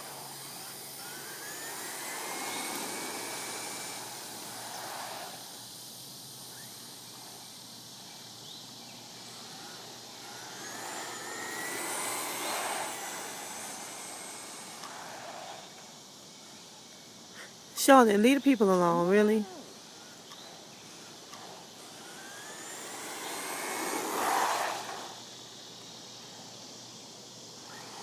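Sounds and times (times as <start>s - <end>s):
remote-control car motor whining: 0.0s - 5.8s, 6.5s - 7.5s, 9.1s - 16.6s, 19.4s - 25.3s, 27.6s - 28.0s.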